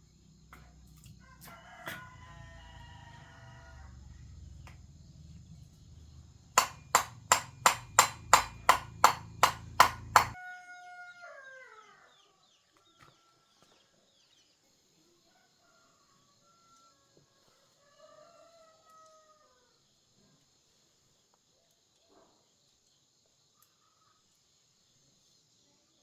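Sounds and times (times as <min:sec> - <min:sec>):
rooster crowing: 0:01.2 - 0:04.7, 0:08.2 - 0:13.5, 0:15.3 - 0:19.8
sharp knocks: 0:06.6 - 0:10.4.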